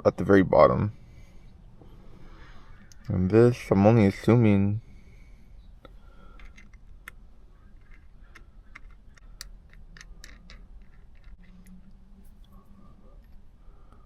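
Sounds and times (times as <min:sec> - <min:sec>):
small plastic clicks and ticks: 0:05.8 - 0:12.0.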